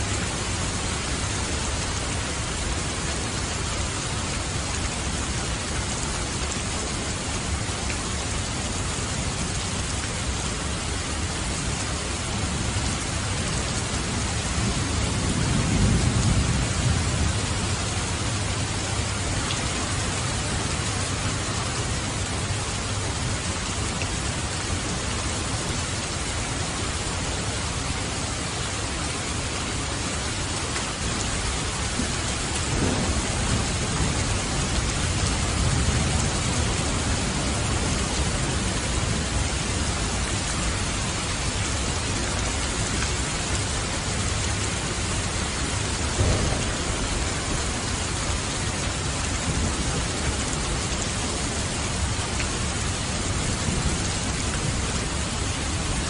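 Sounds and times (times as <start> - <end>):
heavy rain falling: 0.0 - 56.0
thunder rumbling: 32.0 - 39.4, 45.6 - 51.2.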